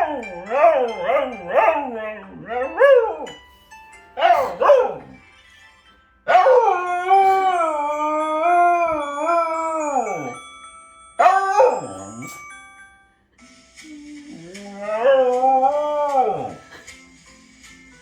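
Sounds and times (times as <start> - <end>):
dog howling: 6.3 - 10.4, 11.2 - 12.3.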